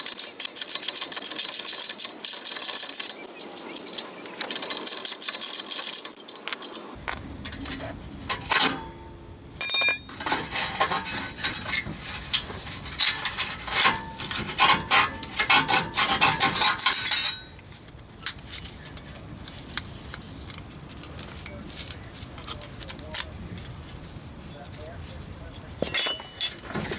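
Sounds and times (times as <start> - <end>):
clicking and scraping: 0.0 - 9.0, 9.9 - 26.9
metal tools clinking: 0.0 - 26.9
ringing metallic clang: 8.3 - 11.2, 25.8 - 26.9.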